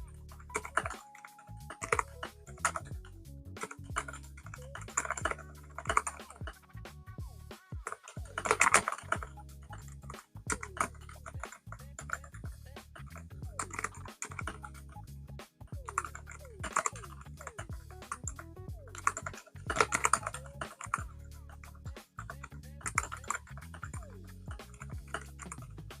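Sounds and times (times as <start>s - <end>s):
background music: 0.0s - 26.0s
damped keyboard keystrokes: 0.5s - 2.9s.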